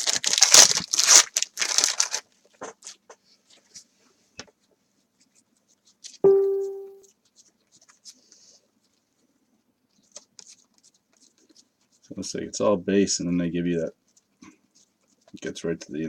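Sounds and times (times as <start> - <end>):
foil wrapper crinkling and tearing: 0.0 - 3.0
short chime-like note: 6.3 - 7.0.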